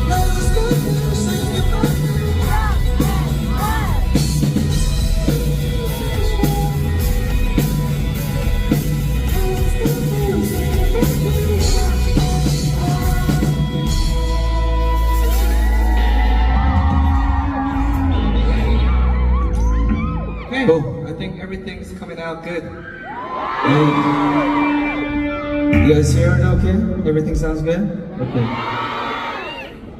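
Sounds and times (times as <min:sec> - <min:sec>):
drum kit: 0:00.0 - 0:20.1
person singing: 0:00.0 - 0:20.1
bass guitar: 0:00.0 - 0:21.0, 0:24.0 - 0:27.6.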